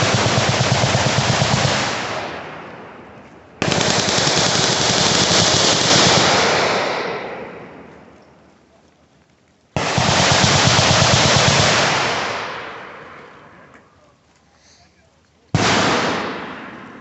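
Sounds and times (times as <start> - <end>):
machine-gun fire: 0.0 - 8.0, 9.8 - 13.4, 15.5 - 17.0.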